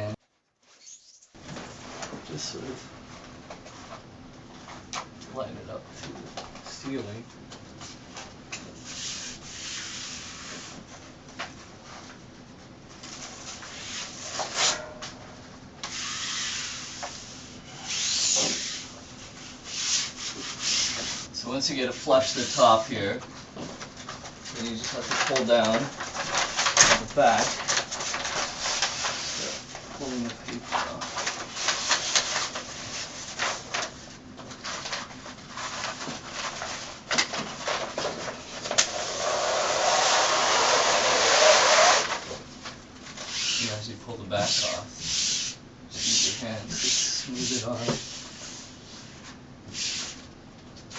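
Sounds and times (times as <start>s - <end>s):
wallpaper sheet rubbing on wall: 8.8s - 11.0s, 13.0s - 14.8s, 15.9s - 21.3s, 24.1s - 42.4s, 43.1s - 43.8s, 44.4s - 50.2s
backing paper peeling rasp: 15.8s - 21.3s, 22.1s - 22.9s, 24.0s - 42.4s, 43.1s - 50.2s
paper crinkling: 23.4s - 38.9s.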